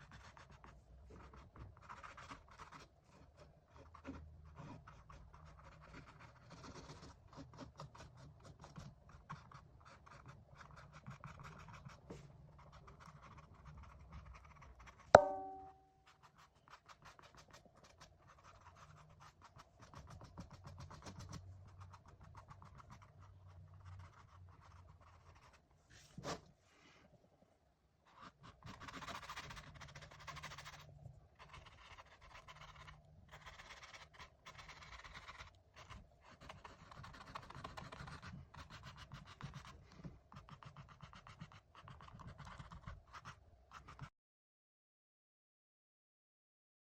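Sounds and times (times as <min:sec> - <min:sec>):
small knock: 0:15.2 - 0:15.8
paintbrush scratching on canvas: 0:28.1 - 0:44.1.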